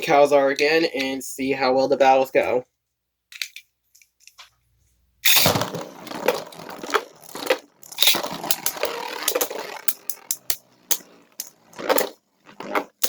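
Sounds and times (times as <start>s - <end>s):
spinning tops clacking together: 5.3s - 12.2s
spinning tops scraping plastic: 5.3s - 13.0s.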